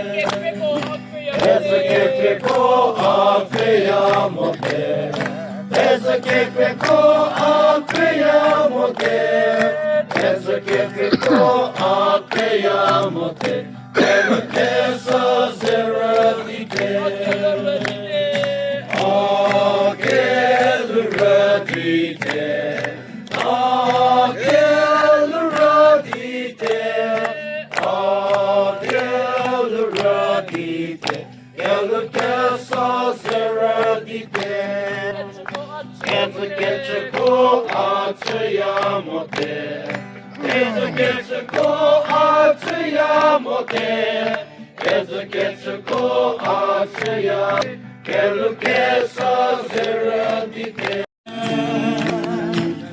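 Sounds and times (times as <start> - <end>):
group of people singing: 0.0 - 52.9.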